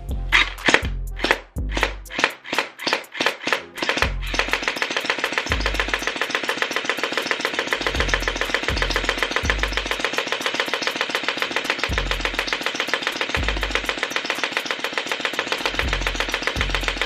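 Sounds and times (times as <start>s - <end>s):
deep bass notes: 0.0s - 2.2s, 4.0s - 4.6s, 7.9s - 10.0s, 11.9s - 12.5s
gel blaster firing full auto: 0.4s - 17.0s.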